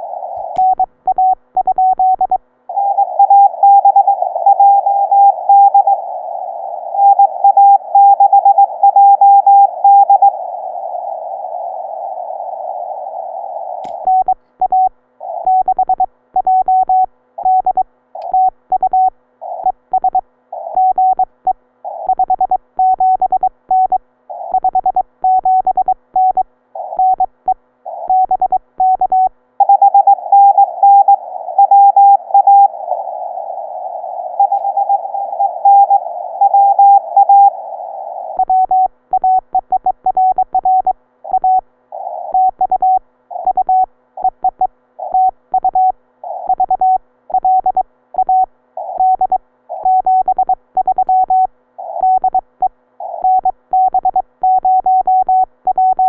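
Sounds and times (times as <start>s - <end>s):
radio receiver hiss: 0.0s - 0.8s, 9.7s - 14.4s, 30.1s - 38.4s
morse code tone: 27.0s - 32.7s.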